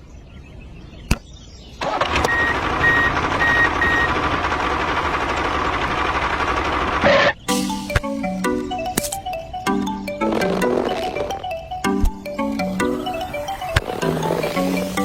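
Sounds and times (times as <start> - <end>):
vehicle engine starting and running: 1.8 - 8.1.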